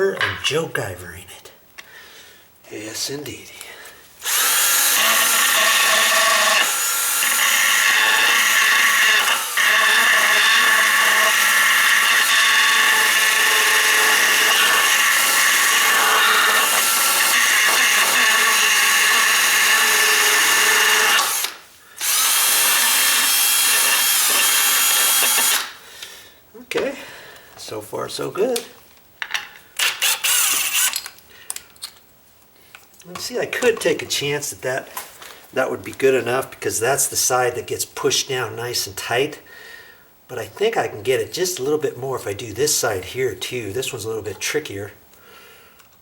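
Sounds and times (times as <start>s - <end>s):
electric drill running: 4.2s - 25.8s, 29.8s - 31.0s.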